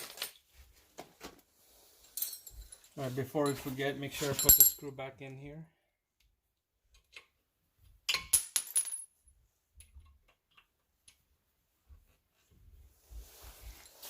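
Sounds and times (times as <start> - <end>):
small metal parts clinking: 4.2 - 4.9.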